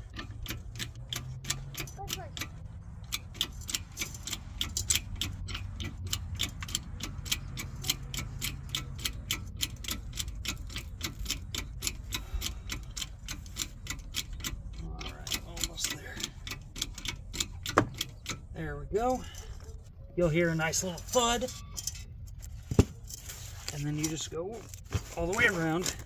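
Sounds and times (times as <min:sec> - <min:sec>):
rapid mechanical clicking: 0:00.0 - 0:19.8.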